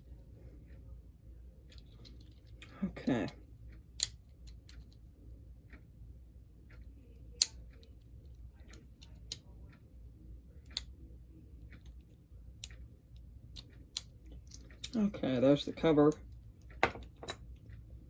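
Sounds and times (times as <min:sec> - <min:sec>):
small parts clicking and tapping: 0:01.6 - 0:05.9, 0:06.6 - 0:09.8, 0:10.5 - 0:17.8
tool knocking small parts: 0:16.7 - 0:17.4.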